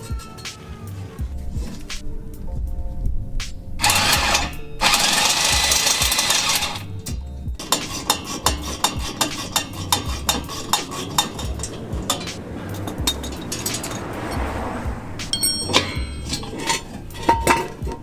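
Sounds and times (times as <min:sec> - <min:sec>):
metal tools clinking on metal: 0:00.0 - 0:00.8, 0:03.8 - 0:14.5, 0:15.3 - 0:18.0
music with pulsing bass: 0:00.0 - 0:03.8, 0:06.8 - 0:07.6.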